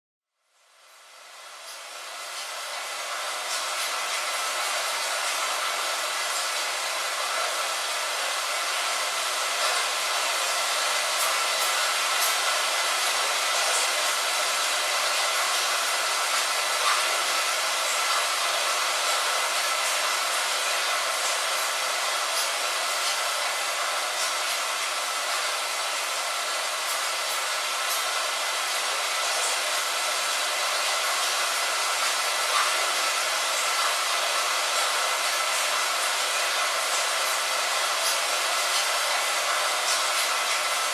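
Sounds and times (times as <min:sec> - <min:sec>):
light rain on a window: 0:00.6 - 0:40.9.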